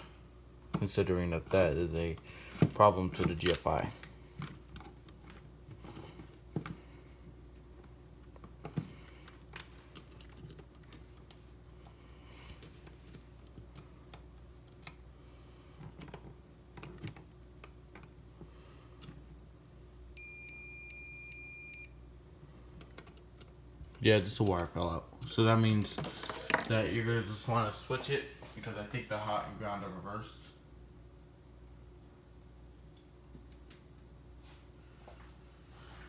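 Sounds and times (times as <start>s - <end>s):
multimeter high-pitched beep: 20.2s - 21.9s.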